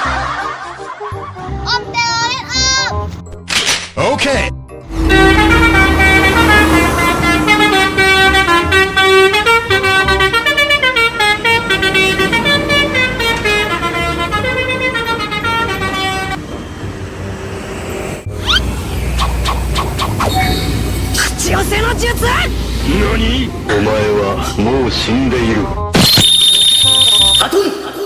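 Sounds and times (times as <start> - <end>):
musical air horn melody: 4.8 - 17.3, 20.2 - 27.4
steady vehicle noise: 4.8 - 25.9.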